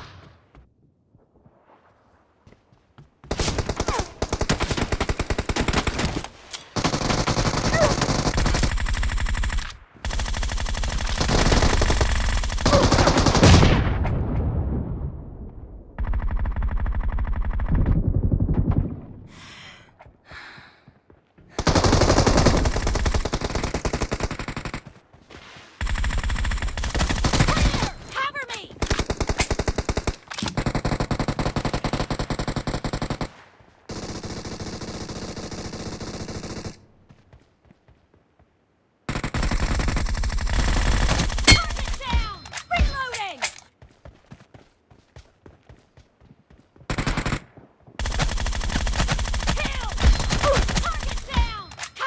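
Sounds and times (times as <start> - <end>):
video game automatic gunfire: 6.8 - 13.7, 21.6 - 25.0, 25.8 - 27.9, 28.8 - 36.8, 39.1 - 42.3, 46.9 - 51.7.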